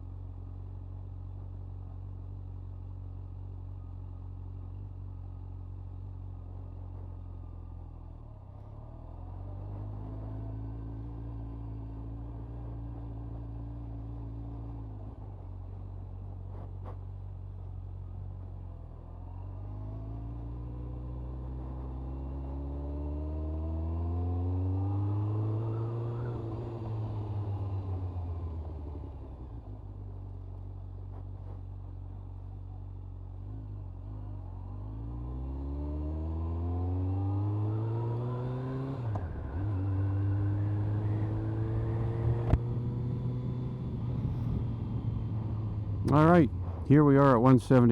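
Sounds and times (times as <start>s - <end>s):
motorcycle engine running: 39.0s - 47.9s.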